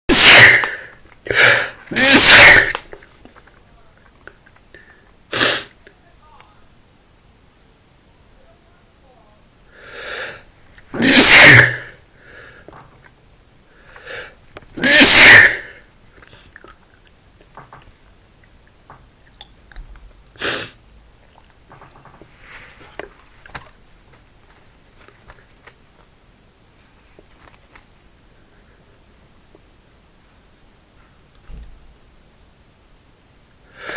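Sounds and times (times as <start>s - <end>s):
man sneezing: 0.1s - 2.8s, 5.3s - 5.7s, 10.0s - 12.0s, 14.8s - 15.8s
faint breaths: 4.7s - 5.8s, 9.6s - 10.6s, 12.0s - 12.9s, 13.6s - 14.4s, 33.6s - 33.9s.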